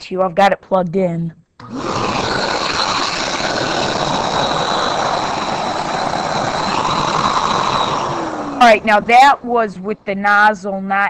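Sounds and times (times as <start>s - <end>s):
vacuum cleaner running: 1.6s - 9.4s.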